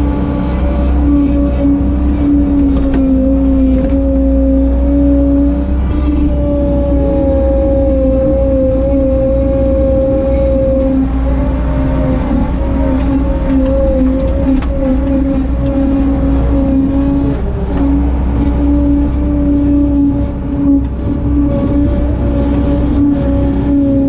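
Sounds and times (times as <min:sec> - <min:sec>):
diesel engine revving high: 0:00.0 - 0:24.0.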